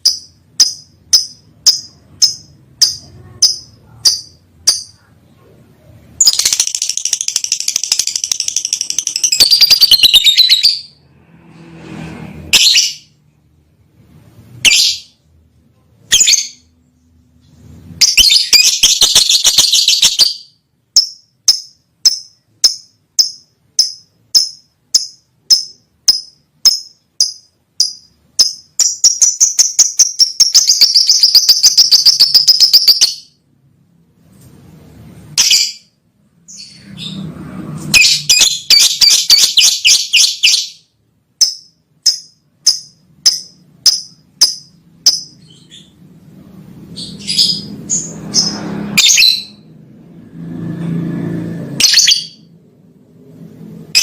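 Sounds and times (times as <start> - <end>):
lovebirds chirping loudly: 6.2 - 11.0, 18.0 - 33.4, 47.0 - 49.6, 51.8 - 52.5.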